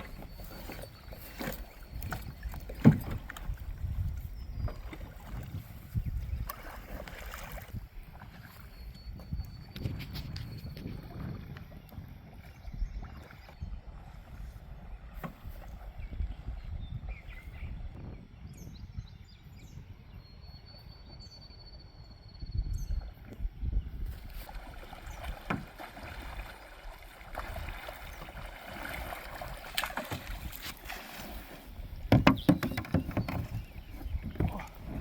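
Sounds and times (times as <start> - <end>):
paddle knocking against hull: 0.0 - 5.5, 15.1 - 16.0, 24.5 - 35.0
paddle strokes splashing: 0.0 - 8.8, 24.1 - 35.0.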